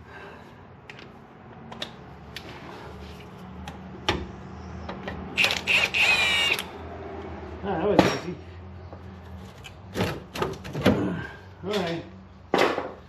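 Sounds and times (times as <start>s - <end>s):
rapid ratchet clicking: 5.4s - 6.7s.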